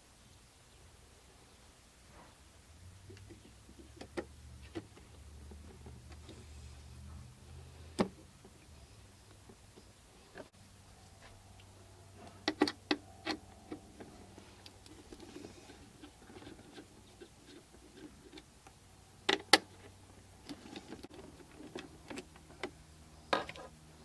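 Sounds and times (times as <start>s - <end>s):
faint low hum: 0.0s - 24.0s
plastic and metal parts clicking: 12.2s - 18.5s, 19.2s - 23.7s.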